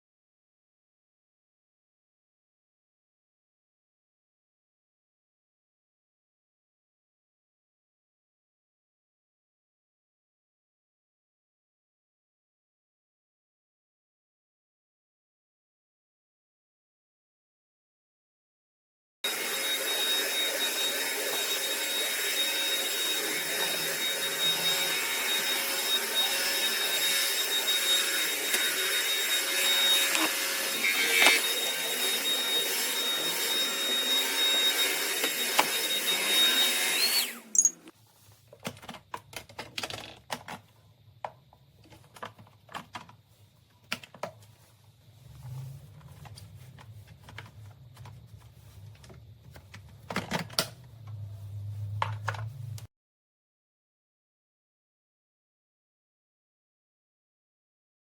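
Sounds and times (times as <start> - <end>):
vacuum cleaner whining: 19.2 - 38.0.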